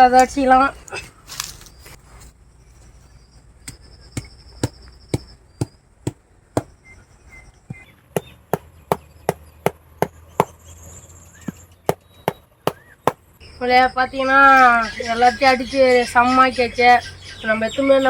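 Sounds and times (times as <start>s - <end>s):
stake hammered into ground: 8.2s - 10.6s, 11.5s - 13.2s.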